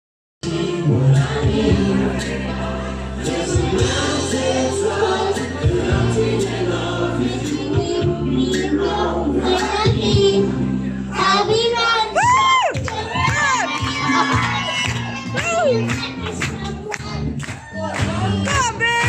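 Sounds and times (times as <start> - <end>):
choir singing: 0.4 - 12.2, 12.9 - 16.4
sustained bass notes: 0.4 - 19.0.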